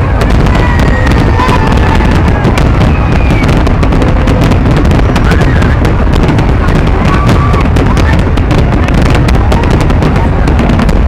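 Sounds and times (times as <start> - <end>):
fireworks bursts rumbling: 0.0 - 11.0
fireworks crackling: 0.0 - 11.0
fireworks whistling: 0.0 - 11.0.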